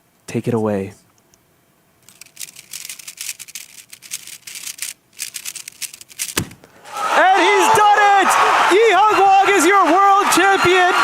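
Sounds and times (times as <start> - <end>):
puzzle cube clicking: 2.0 - 6.6.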